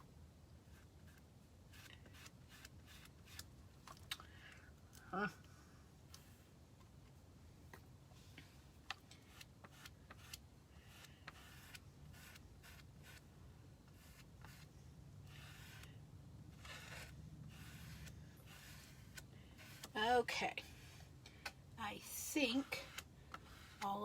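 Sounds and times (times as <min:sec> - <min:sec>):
squeegee scraping across stencil: 0:13.9 - 0:21.1, 0:21.9 - 0:24.0.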